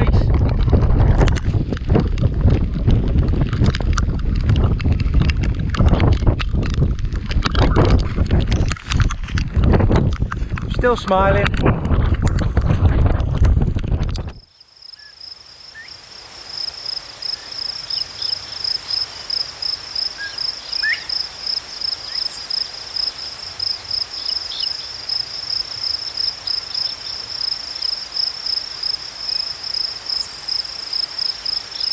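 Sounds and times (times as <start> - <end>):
insect trilling: 14.4 - 31.9.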